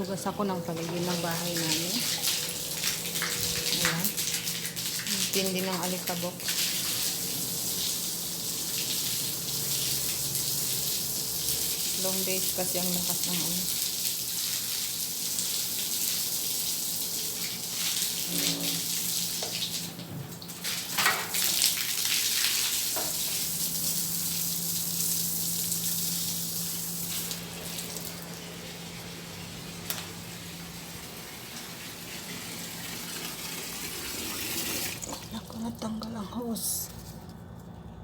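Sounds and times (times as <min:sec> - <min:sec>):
steady low hum: 0:00.0 - 0:06.4
garden hose spraying water: 0:00.0 - 0:35.4.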